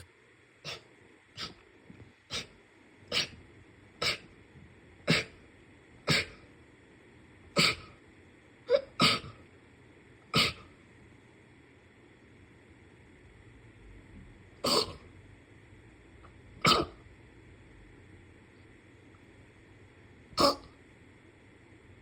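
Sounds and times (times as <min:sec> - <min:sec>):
person sneezing: 0:03.1 - 0:03.4, 0:04.0 - 0:04.3, 0:05.1 - 0:05.4, 0:06.1 - 0:06.4, 0:07.6 - 0:07.9, 0:08.7 - 0:09.4, 0:10.4 - 0:10.7.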